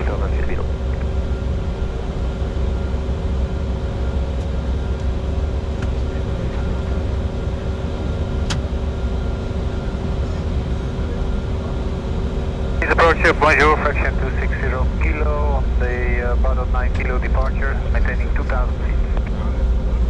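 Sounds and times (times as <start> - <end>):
jet cockpit airflow rush: 12.8 - 19.7
steady tones: 12.8 - 20.0.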